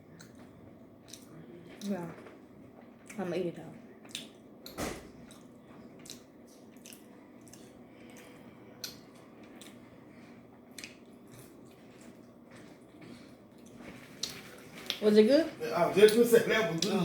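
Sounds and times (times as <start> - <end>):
person chewing fried food: 0.0 - 2.0, 3.9 - 15.0
wet mouth clicks: 4.1 - 4.8, 6.0 - 6.2.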